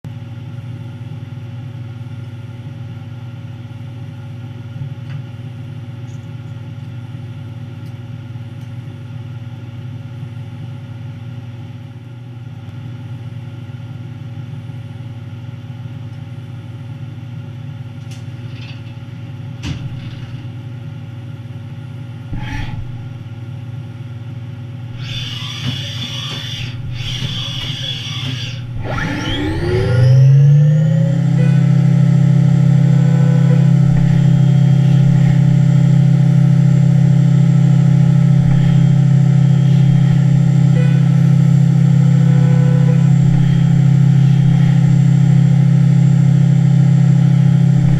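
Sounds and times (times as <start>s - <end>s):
milling machine humming: 22.2s - 23.6s, 24.7s - 47.9s
spindle whine: 22.2s - 47.9s.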